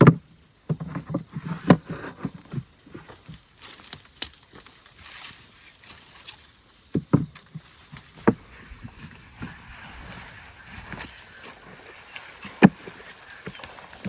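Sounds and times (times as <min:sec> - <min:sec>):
hollow knocks and thuds: 0:06.9 - 0:09.6.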